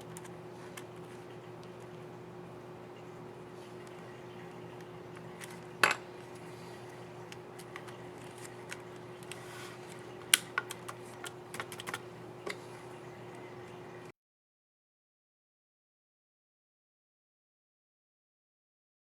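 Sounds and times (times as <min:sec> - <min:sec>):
faint steady hum: 0:00.0 - 0:14.1.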